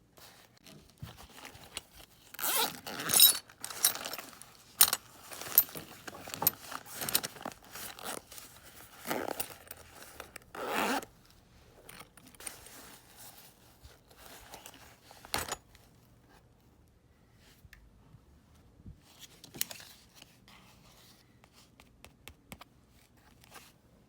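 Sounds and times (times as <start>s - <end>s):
rustling and scraping handling noises: 0.0s - 16.6s, 18.4s - 24.0s
zipper being pulled: 2.4s - 8.2s, 8.8s - 11.1s.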